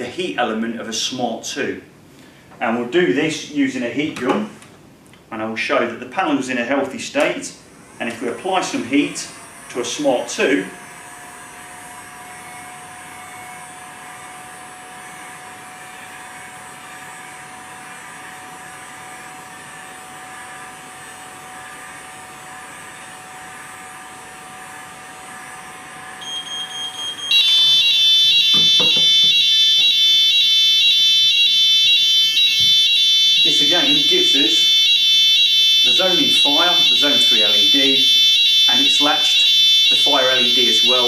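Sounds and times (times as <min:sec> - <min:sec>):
fire alarm sounders: 0:26.2 - 0:41.0
pulsing beep: 0:26.2 - 0:41.0
heat gun blowing with whine: 0:27.2 - 0:41.0.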